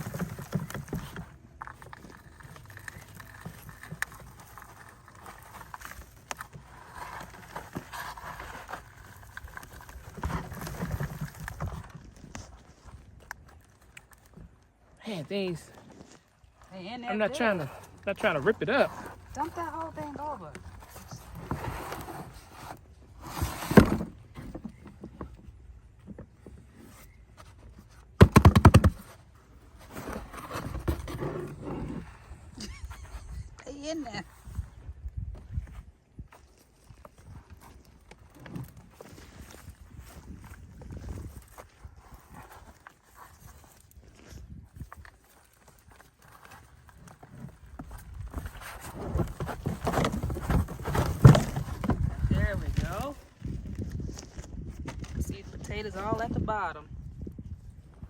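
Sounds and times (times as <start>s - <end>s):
soil rustling and crunching: 0.0s - 58.0s
dull thumps: 28.1s - 29.2s, 48.0s - 53.1s.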